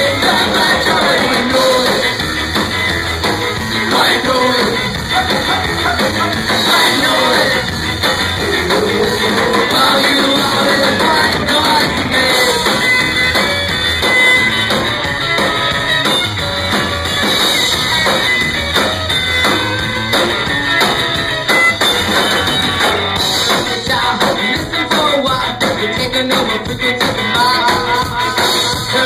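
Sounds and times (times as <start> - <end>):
vocals: 0.0 - 2.6, 3.6 - 13.2, 23.2 - 29.0
drum kit steady beat: 0.0 - 29.0
guitars: 0.0 - 29.0
ska-punk band playing live: 0.0 - 29.0.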